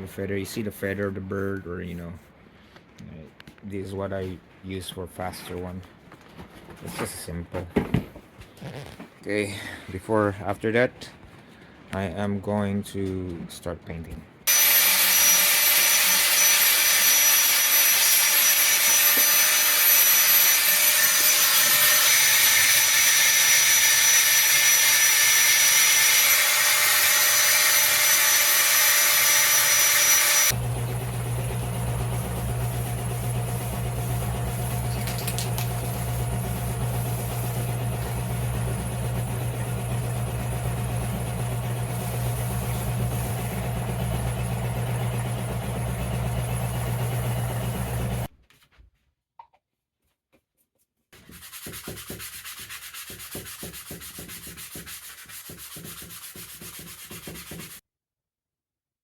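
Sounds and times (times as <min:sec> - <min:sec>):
belt sander sanding wood: 0:14.5 - 0:48.3, 0:51.2 - 0:57.8
scratchy rubbing: 0:51.2 - 0:57.8.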